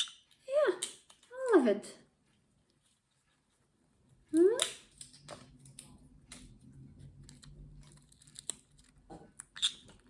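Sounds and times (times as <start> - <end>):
parrot beak crunching nuts: 7.4 - 10.0.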